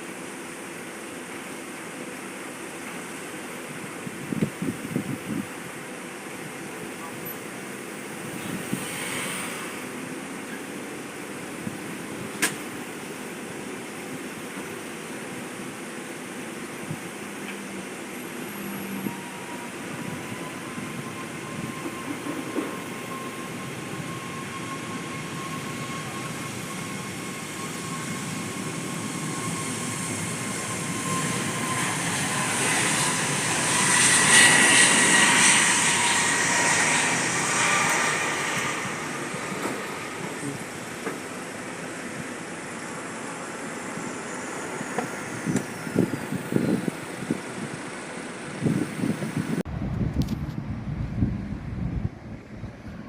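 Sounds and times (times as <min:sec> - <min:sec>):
jet aircraft passing: 0:04.2 - 0:15.8, 0:16.5 - 0:53.0.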